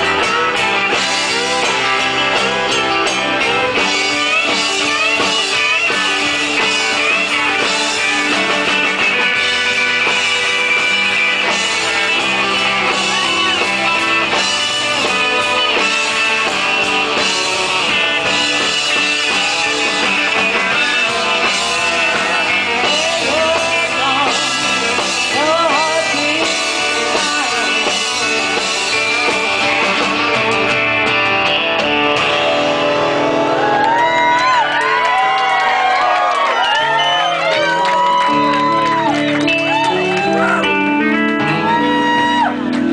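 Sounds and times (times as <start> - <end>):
electric guitar: 0.0 - 42.9
live rock band playing: 0.0 - 42.9
crowd whooping and cheering: 33.0 - 42.9.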